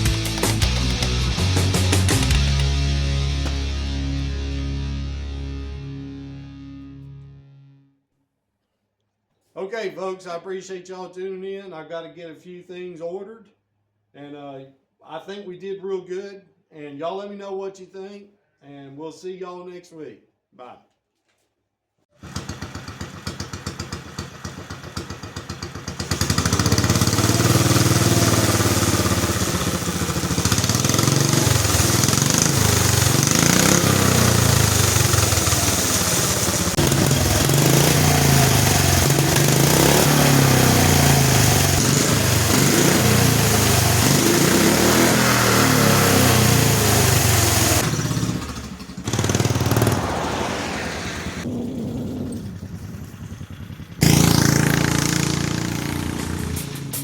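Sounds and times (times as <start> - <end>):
small gasoline engine revving: 22.2 - 57.0.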